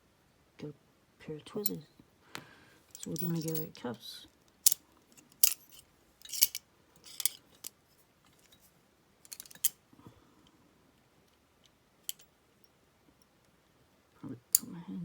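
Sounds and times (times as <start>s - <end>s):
handcuffs clicking and clinking: 2.9s - 3.8s, 4.6s - 7.8s, 9.3s - 9.8s, 12.1s - 12.3s.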